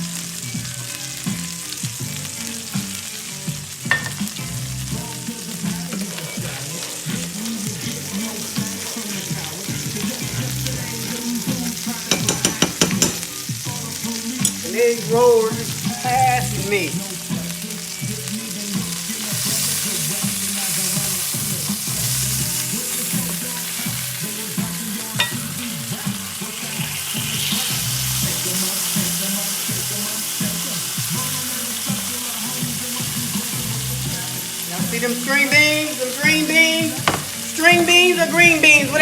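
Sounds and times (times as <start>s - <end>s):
string beans sizzling in a pan: 0.0s - 39.0s.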